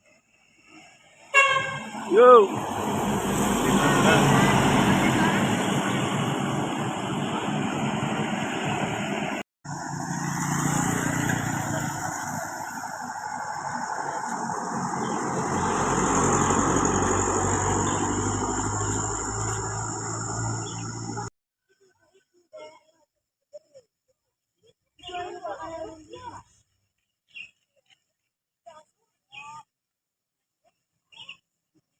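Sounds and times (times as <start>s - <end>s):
road noise of large vehicles: 0.1s - 21.3s
bus engine low drone: 1.6s - 21.3s.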